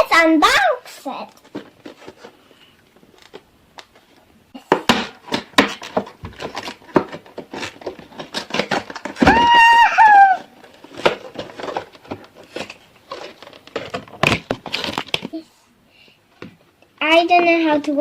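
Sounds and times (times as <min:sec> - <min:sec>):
toy packaging rustling and clicking: 0:01.2 - 0:09.5, 0:10.2 - 0:15.4.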